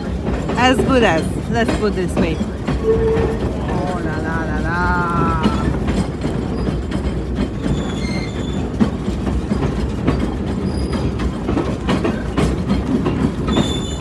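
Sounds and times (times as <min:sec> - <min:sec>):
train rumbling along track: 0:00.0 - 0:14.0
wheel clacks on rail joints: 0:02.3 - 0:14.0
high-pitched wheel squeals: 0:02.8 - 0:04.2, 0:07.6 - 0:08.8.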